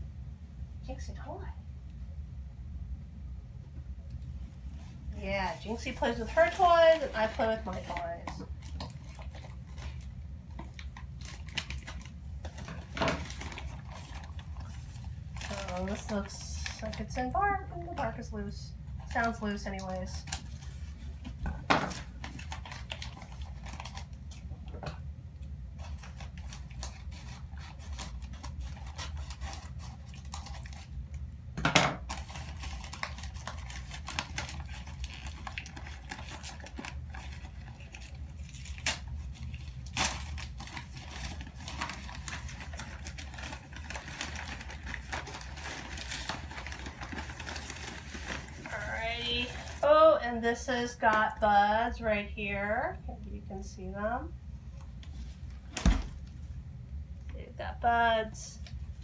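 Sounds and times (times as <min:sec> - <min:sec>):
steady low hum: 0:00.0 - 0:59.0
packing material rustling: 0:04.6 - 0:17.6, 0:19.0 - 0:24.5, 0:25.8 - 0:31.1, 0:32.0 - 0:49.9.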